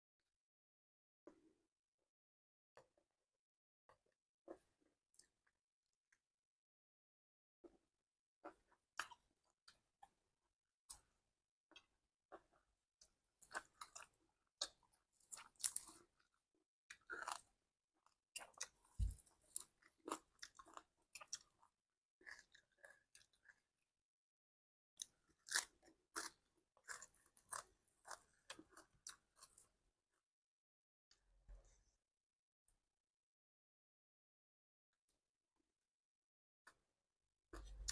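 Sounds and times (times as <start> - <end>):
person chewing and crunching: 13.4 - 16.3, 16.9 - 23.7, 25.0 - 29.7.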